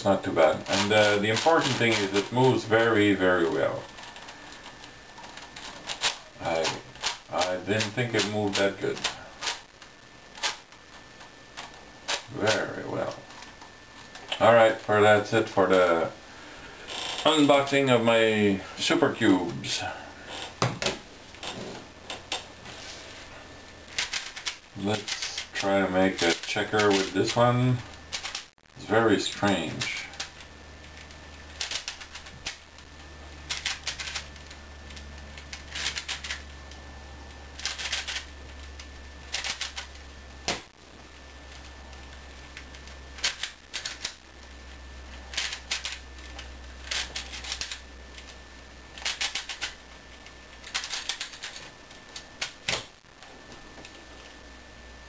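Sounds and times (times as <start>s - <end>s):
low steady hum: 0.0s - 55.0s
puzzle layers clicking: 28.1s - 28.5s, 29.7s - 32.6s, 33.5s - 36.5s, 37.6s - 40.7s, 49.0s - 52.9s.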